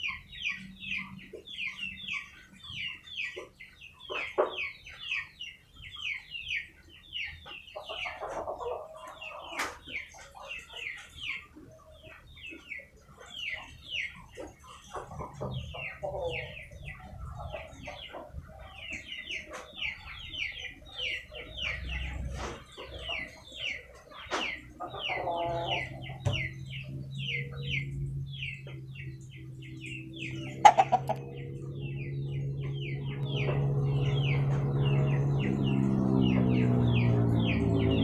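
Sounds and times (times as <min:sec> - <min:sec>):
chickens clucking: 0:00.0 - 0:38.0
chicks peeping: 0:00.0 - 0:38.0
steady low hum: 0:13.3 - 0:38.0.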